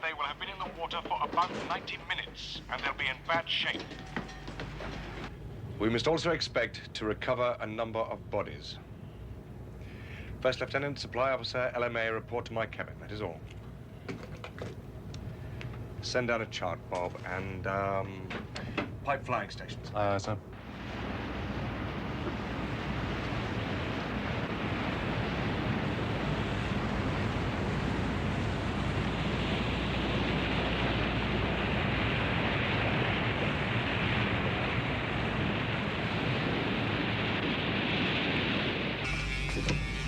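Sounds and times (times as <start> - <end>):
sea rushing: 0.0 - 3.8, 20.4 - 40.0
mechanical hum: 0.0 - 40.0
wind: 0.0 - 40.0
low engine hum: 13.4 - 40.0.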